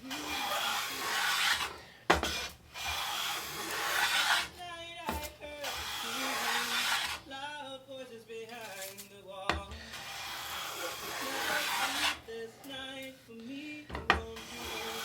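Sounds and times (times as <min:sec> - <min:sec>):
hand plane cutting wood: 0:00.0 - 0:07.2, 0:09.9 - 0:12.2, 0:14.1 - 0:15.0.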